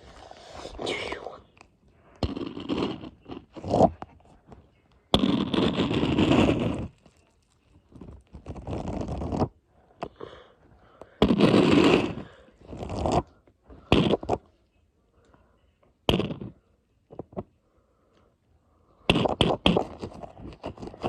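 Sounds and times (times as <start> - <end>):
crackling scraping handling noise: 2.2 - 10.1, 11.2 - 14.5, 19.1 - 21.0.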